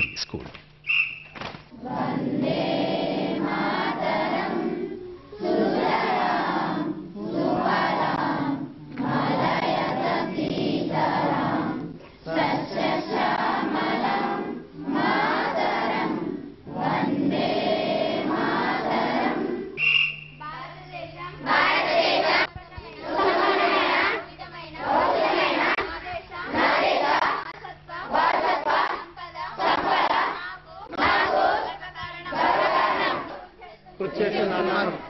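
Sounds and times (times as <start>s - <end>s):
children's voices in unison: 21.7s - 31.8s.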